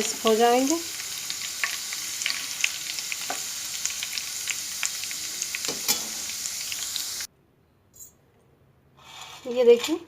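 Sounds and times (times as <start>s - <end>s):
oil crackling and popping: 0.0s - 7.3s
potato deep-frying in oil: 0.0s - 7.3s.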